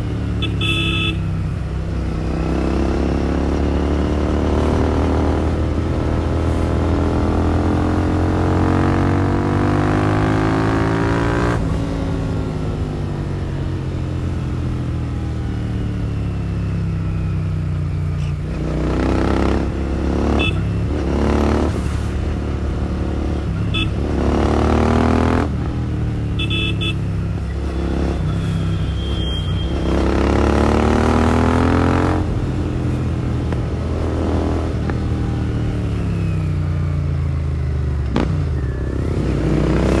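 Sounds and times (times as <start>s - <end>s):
motorcycle engine revving: 0.0s - 17.2s, 18.4s - 40.0s
short high beeps: 28.2s - 30.0s.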